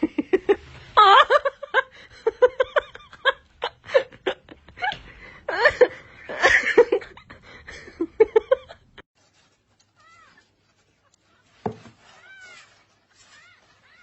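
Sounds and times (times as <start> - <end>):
cat meowing: 11.2 - 14.0.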